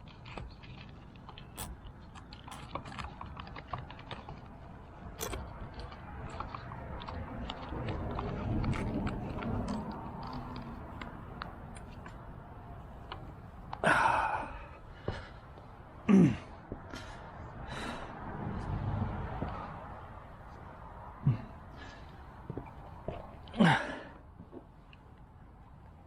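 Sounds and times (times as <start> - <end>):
loud breathy rush: 13.8 - 22.9.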